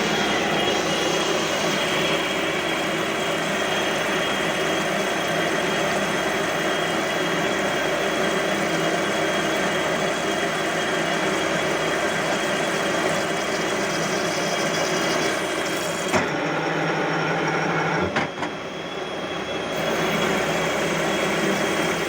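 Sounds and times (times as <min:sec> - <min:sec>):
steady whining tones: 0:00.0 - 0:04.8
lathe machining metal: 0:00.0 - 0:22.0.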